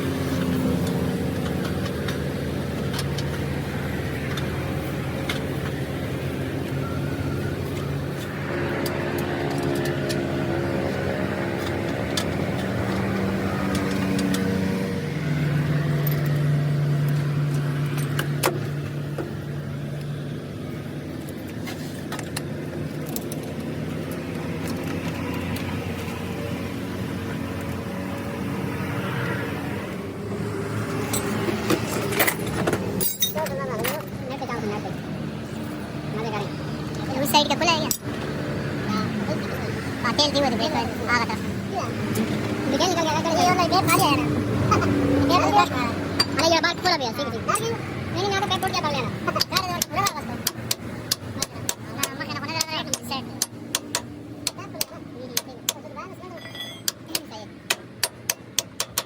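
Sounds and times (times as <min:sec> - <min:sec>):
vehicle engines running: 0:00.0 - 0:59.0
sharp metal clinks: 0:33.0 - 0:34.0, 0:56.4 - 0:57.0.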